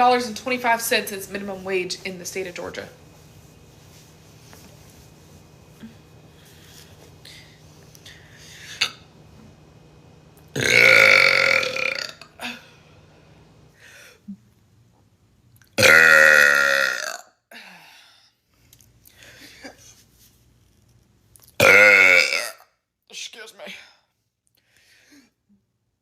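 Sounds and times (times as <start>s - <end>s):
person burping: 10.5s - 12.7s, 15.8s - 17.3s, 21.6s - 22.6s.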